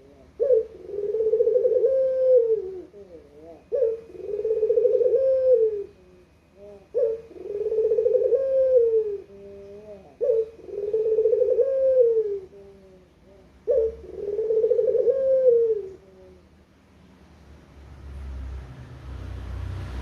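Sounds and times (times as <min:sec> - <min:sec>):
dove cooing: 0:00.0 - 0:16.6.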